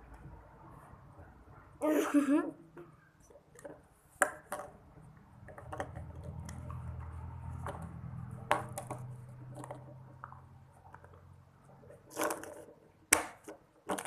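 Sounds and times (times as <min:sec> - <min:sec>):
plastic toys clicking and knocking: 0:02.8 - 0:14.0.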